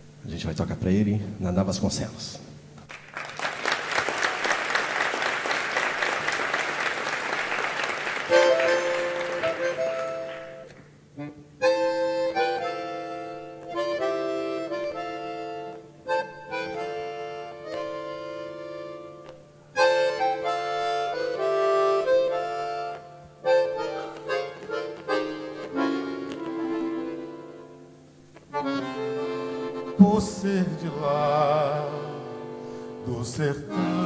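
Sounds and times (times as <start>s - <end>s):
audience applause: 2.9s - 10.7s
accordion playing held chords: 3.6s - 34.0s.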